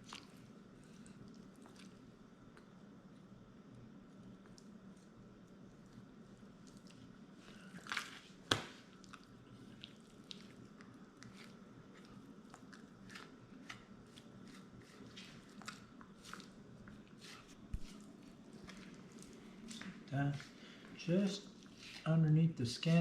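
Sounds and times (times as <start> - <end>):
knife squishing and scraping meat: 6.7 - 19.8, 21.5 - 22.2.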